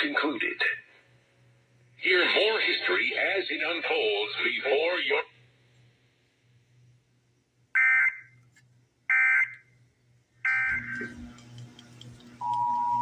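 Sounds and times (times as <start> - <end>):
faint low hum: 0.0 - 13.0
two-tone attention signal: 10.5 - 11.1, 12.4 - 13.0.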